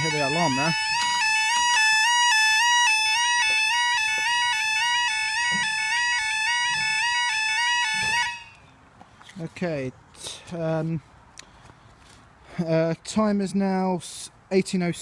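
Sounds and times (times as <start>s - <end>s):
level crossing alarm two-tone yelp: 0.0s - 8.6s.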